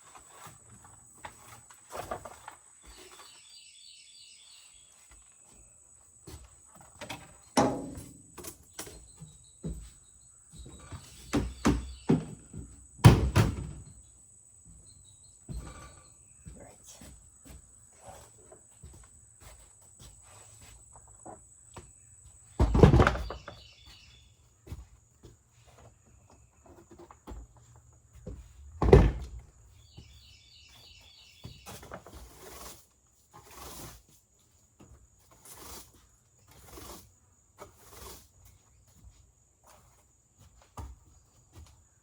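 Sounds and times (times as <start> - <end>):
handling knocks: 28.6 - 29.5
heavy thunks: 28.6 - 29.5.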